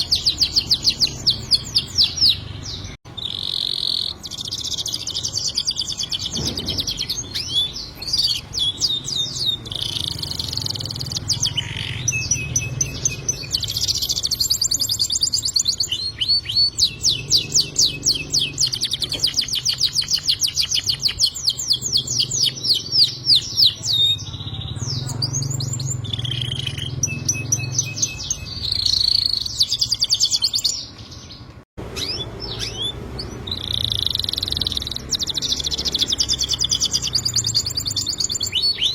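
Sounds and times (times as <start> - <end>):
canary singing: 0.0 - 38.9.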